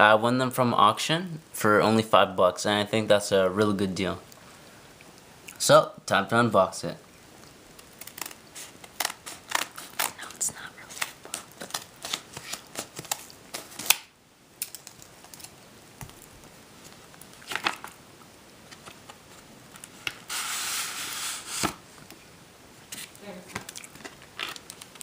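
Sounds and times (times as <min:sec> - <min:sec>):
packaging tearing: 0:07.8 - 0:15.6
packaging clicks and rustles: 0:07.8 - 0:18.0, 0:23.5 - 0:25.0.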